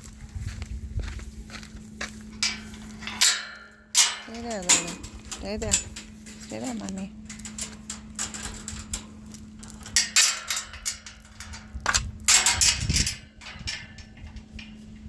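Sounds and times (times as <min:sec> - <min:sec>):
sharp knocks and clatters: 0:07.3 - 0:14.8.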